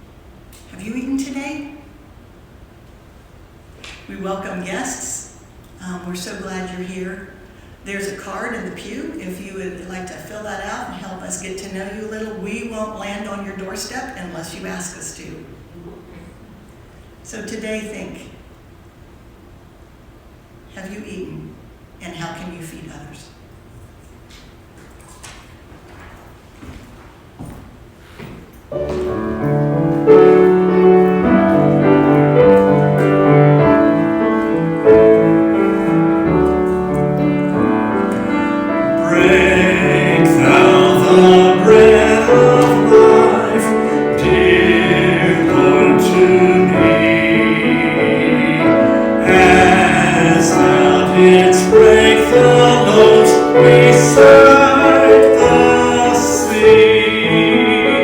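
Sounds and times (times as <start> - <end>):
piano playing: 28.7 - 58.0
choir singing: 28.9 - 58.0.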